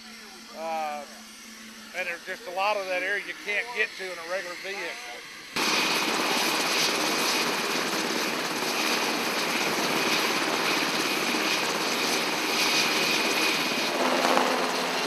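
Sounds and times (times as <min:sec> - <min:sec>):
helicopter rotor and engine noise: 0:00.0 - 0:15.0
thin high whine: 0:13.8 - 0:15.0.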